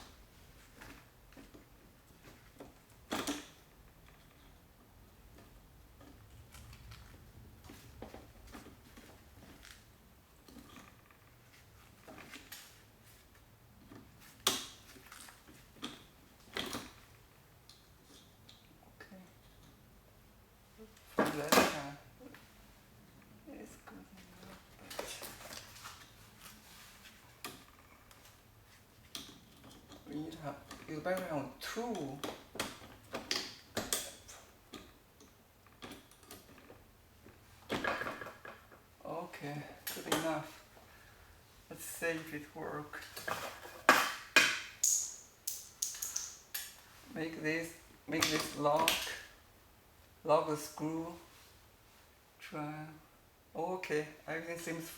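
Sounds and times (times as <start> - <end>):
small metal parts clicking: 44.8 - 46.7.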